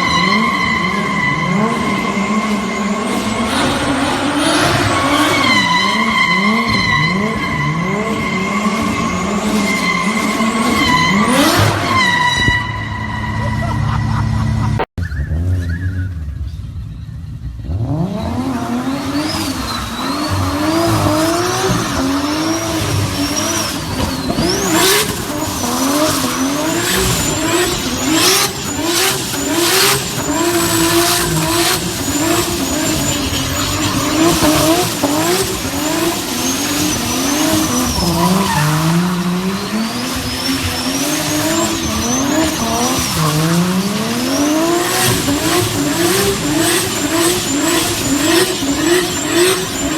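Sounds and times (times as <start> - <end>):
turbocharged car engine revving: 0.0 - 49.9
turbo whistle: 4.6 - 16.4.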